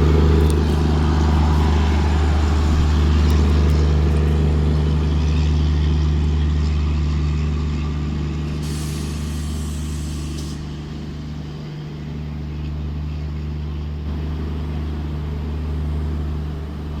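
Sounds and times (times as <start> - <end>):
low machinery hum: 0.0 - 17.0
train hiss: 0.4 - 4.4, 8.5 - 11.3.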